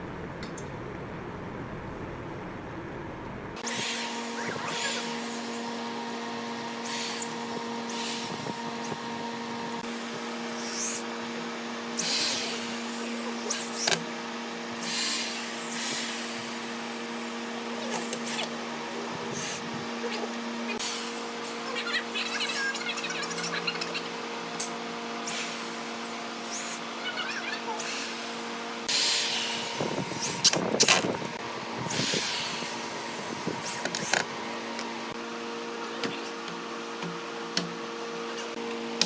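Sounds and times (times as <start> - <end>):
machine hum: 0.0 - 39.0
loud hissing bursts: 12.0 - 13.9, 14.8 - 18.6, 27.8 - 30.8, 31.8 - 33.8.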